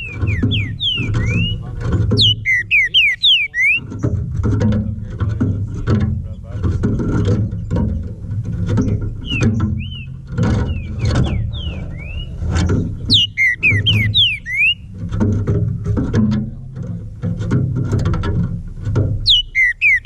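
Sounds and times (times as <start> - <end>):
bird singing slurred whistles: 0.0 - 1.6, 2.2 - 3.9, 9.2 - 12.4, 13.1 - 14.9, 19.2 - 20.0
steady low rumble: 3.9 - 15.8.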